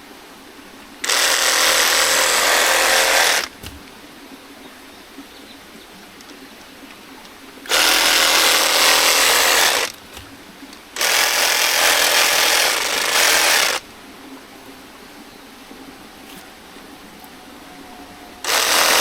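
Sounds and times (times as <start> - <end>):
reciprocating saw cutting: 1.0 - 4.0, 7.7 - 13.9, 17.2 - 19.0.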